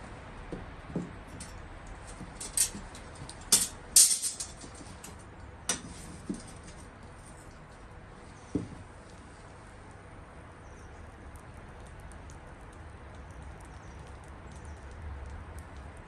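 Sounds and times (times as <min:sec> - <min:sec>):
steady low hiss: 0:00.0 - 0:00.4
metal clinking and jangling: 0:01.4 - 0:05.2.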